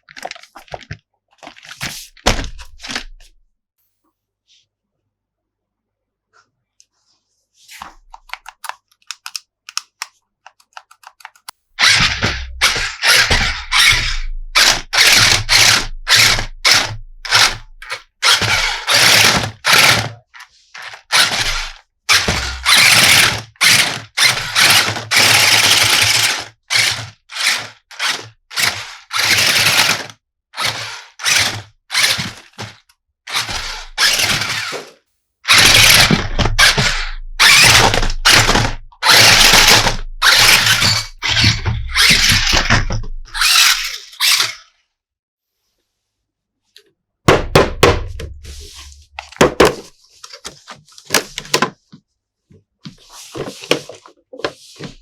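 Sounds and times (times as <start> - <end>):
plastic toy packaging rustling: 0.0 - 3.4, 7.7 - 26.9, 31.3 - 44.6, 48.2 - 52.0, 52.9 - 55.0.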